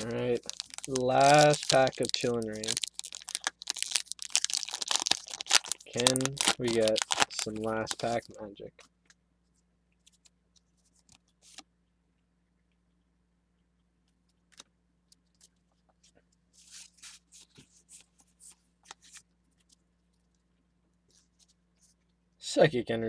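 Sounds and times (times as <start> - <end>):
cards rustling and clicking: 0.0 - 8.4
low steady hum: 0.0 - 23.0.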